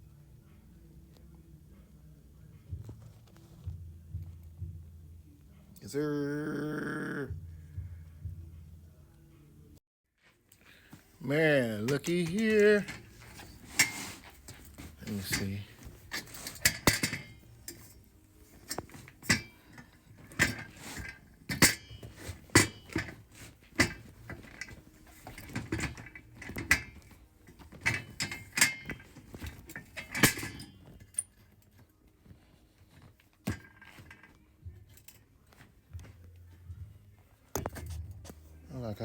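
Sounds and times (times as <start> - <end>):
metal parts clinking and knocking: 11.8 - 31.8, 33.4 - 35.3.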